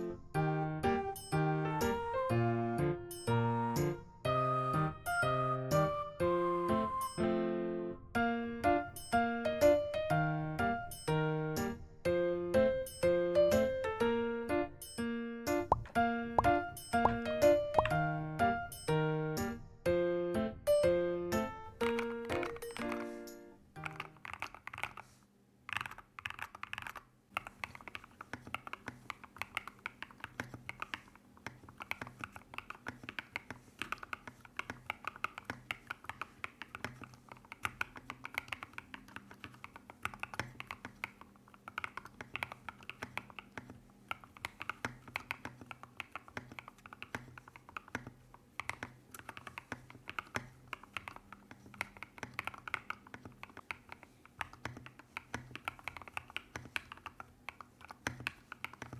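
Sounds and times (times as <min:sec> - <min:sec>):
mechanical keyboard typing: 0:21.4 - 0:58.9.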